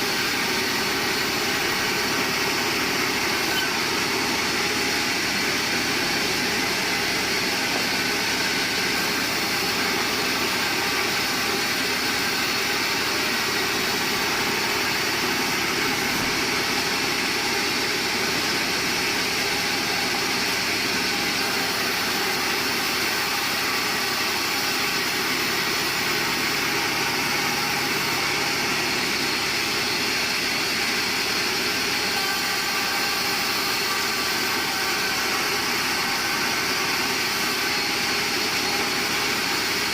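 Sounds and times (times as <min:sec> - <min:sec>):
band sawmill running: 0:00.0 - 0:39.9.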